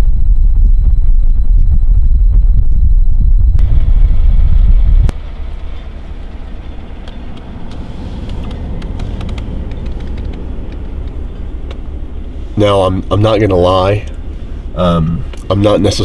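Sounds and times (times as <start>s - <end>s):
truck engine rumbling: 0.0s - 16.0s.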